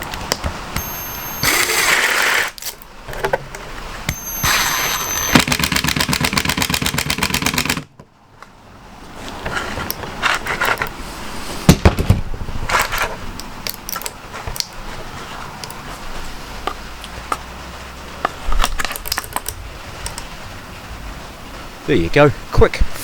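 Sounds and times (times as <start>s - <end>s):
power screwdriver driving screw: 0.8s - 2.9s, 4.1s - 7.8s
knocks and handling noises: 1.5s - 4.2s, 11.6s - 17.5s.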